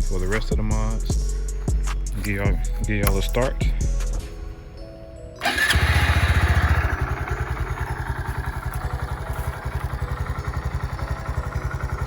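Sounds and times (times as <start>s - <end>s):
motorcycle engine starting and idling: 5.4s - 12.0s.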